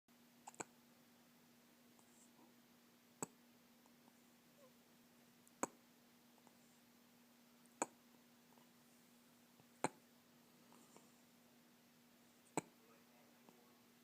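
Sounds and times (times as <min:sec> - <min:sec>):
baby hiccupping: 0:00.4 - 0:00.7.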